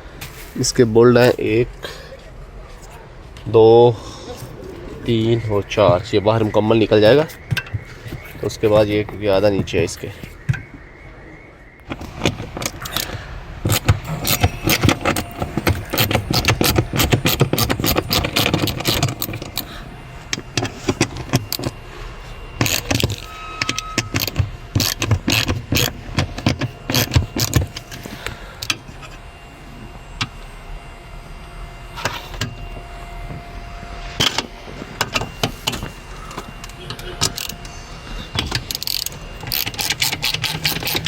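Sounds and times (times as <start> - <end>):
metal tools clinking on bolts: 11.9 - 29.2, 34.2 - 41.0.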